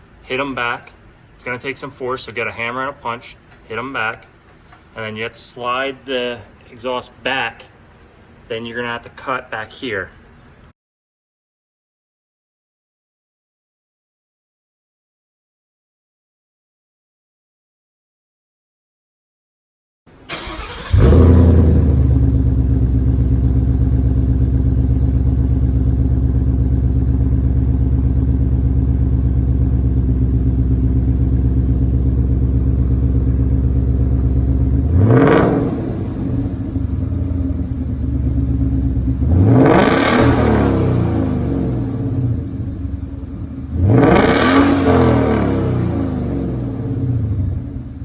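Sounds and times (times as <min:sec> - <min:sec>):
car engine starting and idling: 0:20.1 - 0:48.0
engine revving: 0:20.3 - 0:48.0.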